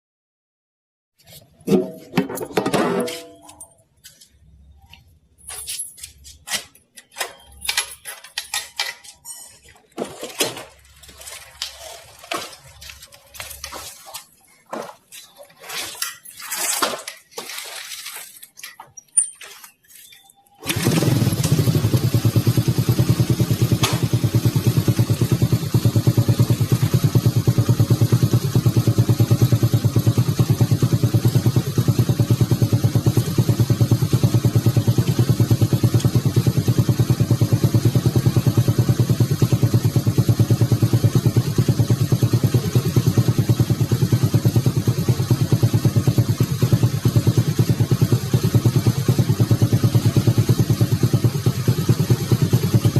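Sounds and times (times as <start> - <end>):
small engine starting and running: 20.6 - 52.9.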